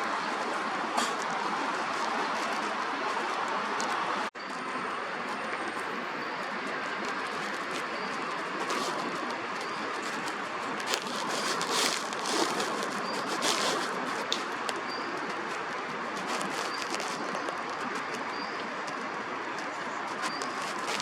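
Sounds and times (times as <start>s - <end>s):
park background noise: 0.0s - 21.0s
rustling: 6.5s - 19.1s, 20.0s - 21.0s.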